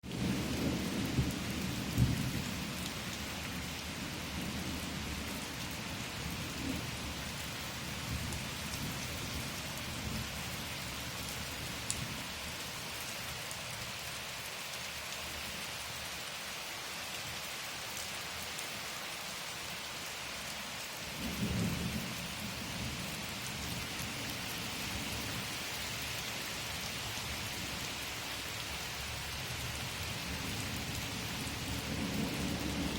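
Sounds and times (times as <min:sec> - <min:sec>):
steady rain falling: 0:00.0 - 0:32.9
thunder rumbles: 0:00.1 - 0:02.9, 0:21.2 - 0:23.8, 0:30.3 - 0:32.9.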